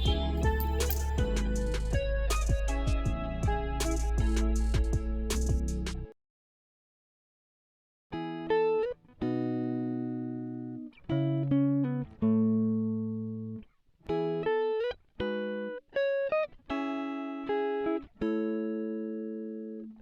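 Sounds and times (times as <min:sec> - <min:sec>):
plucked guitar music: 0:00.0 - 0:02.9, 0:08.2 - 0:20.0.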